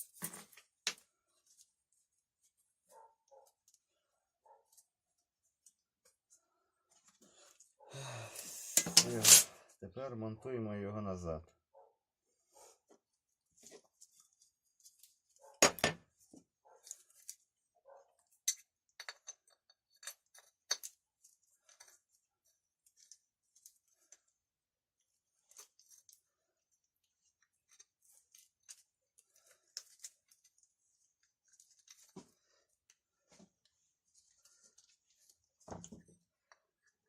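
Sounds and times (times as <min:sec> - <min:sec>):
small metal parts clinking: 0:18.2 - 0:22.2.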